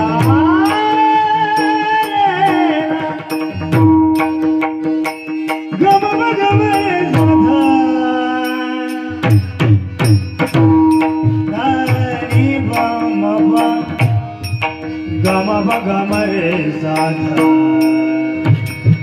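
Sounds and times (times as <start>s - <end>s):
ornamented sliding melody: 0.0s - 19.0s
hand drum strokes: 9.2s - 16.5s.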